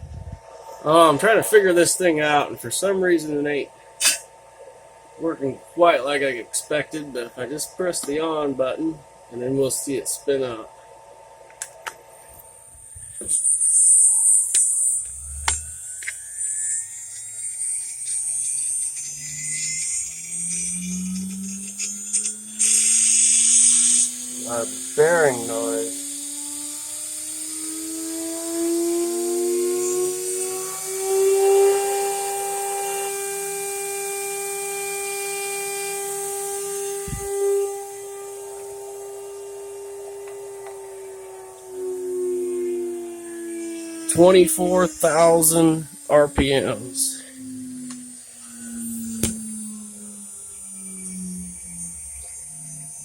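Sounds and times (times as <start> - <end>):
spindle motor whine rising: 0.0 - 53.0
steady high hiss: 12.1 - 28.1, 43.6 - 53.0.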